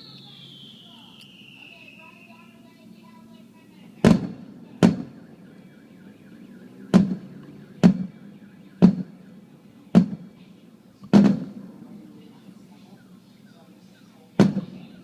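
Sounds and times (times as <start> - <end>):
fireworks exploding: 0.0 - 5.5, 6.9 - 8.2, 8.8 - 9.3, 9.9 - 10.3, 11.1 - 11.7, 14.4 - 15.0
faint car alarm wailing: 0.0 - 15.0.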